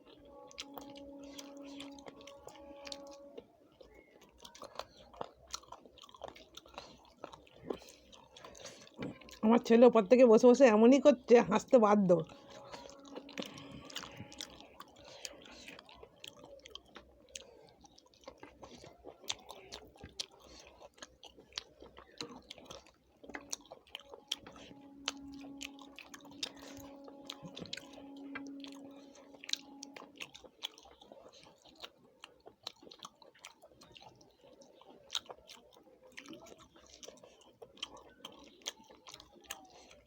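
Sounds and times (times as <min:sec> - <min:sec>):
person chewing food: 0:00.0 - 0:09.5, 0:12.1 - 0:40.0
steady low hum: 0:11.2 - 0:15.9, 0:23.2 - 0:30.6.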